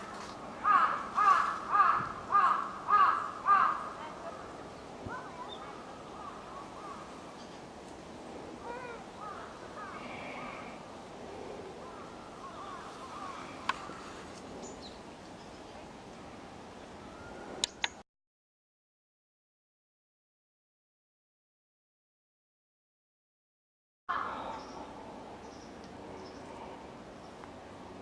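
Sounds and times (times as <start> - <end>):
crows cawing: 0.6 - 4.4, 5.7 - 7.2, 8.6 - 10.8, 11.8 - 14.2, 24.1 - 24.8
sharp click: 17.6 - 18.0.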